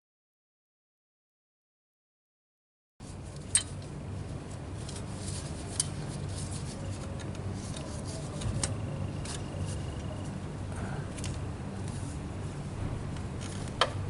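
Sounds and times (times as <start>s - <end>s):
steady low hum: 3.0s - 14.0s.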